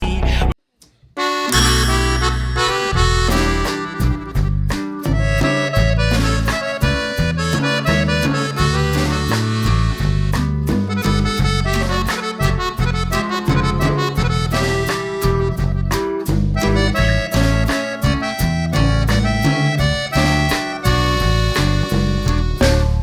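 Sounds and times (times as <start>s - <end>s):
music with strong bass and beat: 1.5s - 23.0s.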